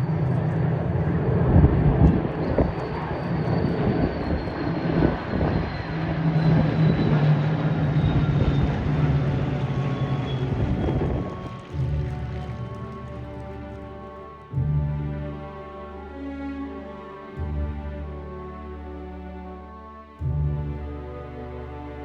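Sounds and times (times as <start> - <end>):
gusty wind: 0.0 - 15.5
aircraft engine drone: 0.0 - 16.8.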